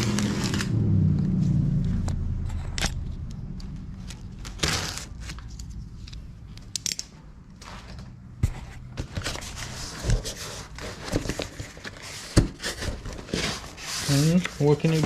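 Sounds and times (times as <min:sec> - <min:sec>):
cardboard tearing rustle: 0:00.0 - 0:00.7, 0:04.4 - 0:05.5, 0:09.2 - 0:15.0
low hum: 0:00.0 - 0:08.4.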